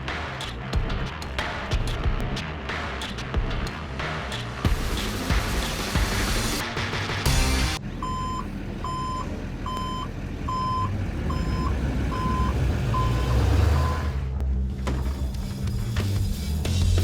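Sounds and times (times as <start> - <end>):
low engine rumble: 7.3 - 16.7
reversing alarm beeping: 8.0 - 14.2.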